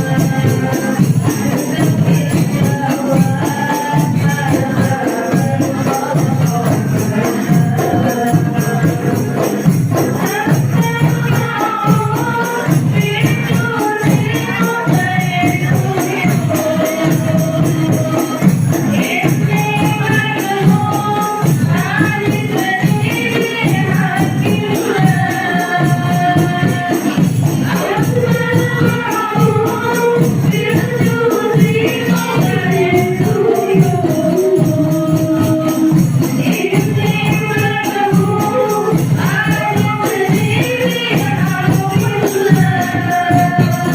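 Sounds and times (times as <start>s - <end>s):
frame drums beating: 0.0s - 43.9s
voices singing: 0.0s - 43.9s.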